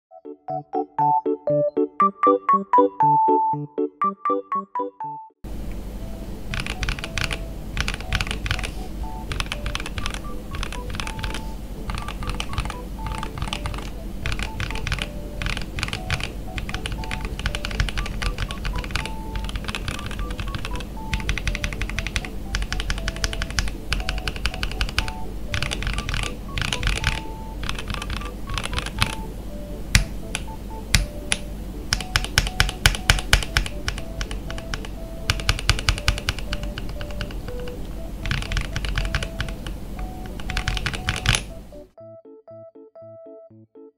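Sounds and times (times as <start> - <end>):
soft background music: 0.1 - 5.4, 6.0 - 43.9
mechanical keyboard typing: 6.5 - 29.3, 29.9 - 41.6.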